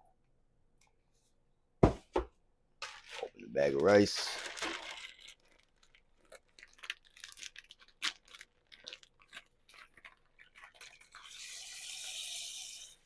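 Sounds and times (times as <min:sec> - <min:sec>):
plastic bag crinkling and tearing: 0:02.8 - 0:11.5
rice grains pouring: 0:03.6 - 0:05.6, 0:08.8 - 0:13.0.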